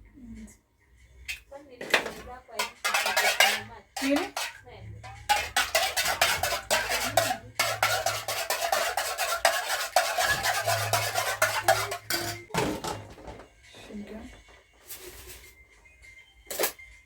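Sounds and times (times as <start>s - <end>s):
utensil clinking against bowl: 1.3s - 13.1s.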